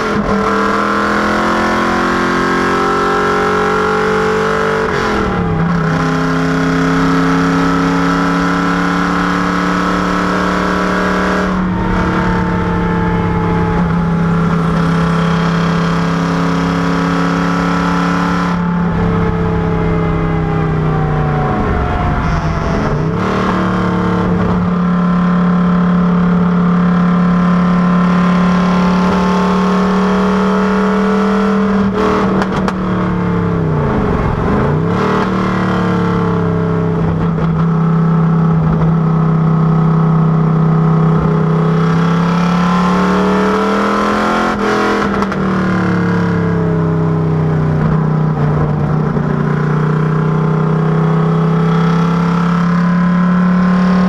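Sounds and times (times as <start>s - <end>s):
car engine running: 0.0s - 54.0s.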